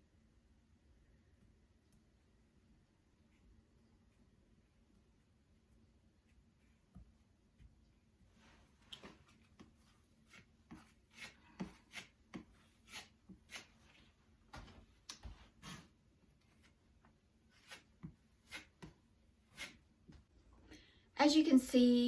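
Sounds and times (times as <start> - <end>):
putty knife scraping and tapping: 10.3 - 13.7.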